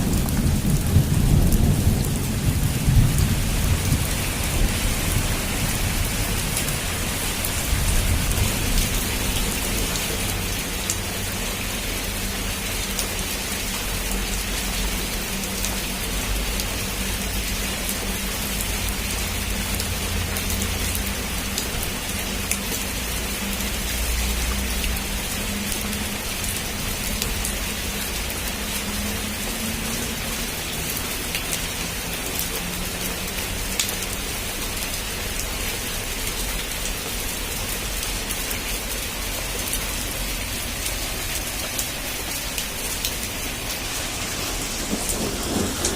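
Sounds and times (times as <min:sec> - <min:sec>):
low rumble of thunder: 0:00.0 - 0:09.5, 0:44.0 - 0:45.9
heavy rain falling: 0:00.0 - 0:45.9.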